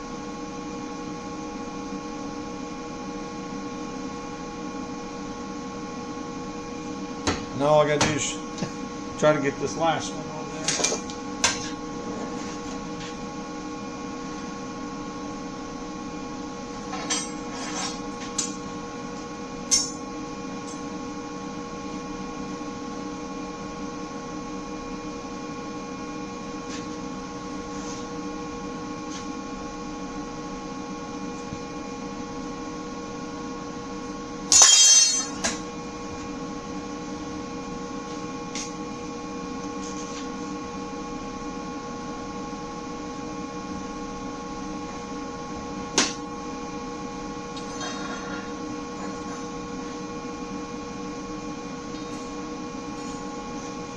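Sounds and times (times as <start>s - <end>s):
electrical hum: 0.0s - 53.9s.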